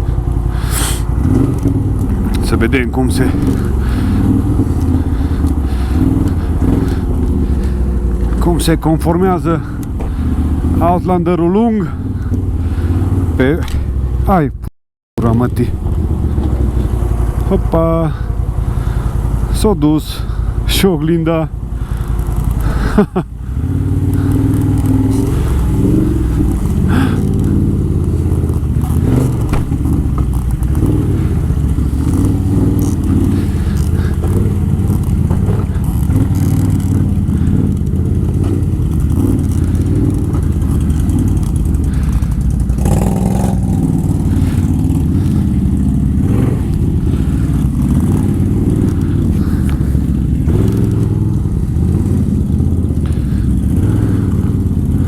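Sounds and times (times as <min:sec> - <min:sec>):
atv engine running: 0:00.0 - 0:55.0
knocks and scrapes on rough ground: 0:24.2 - 0:51.2.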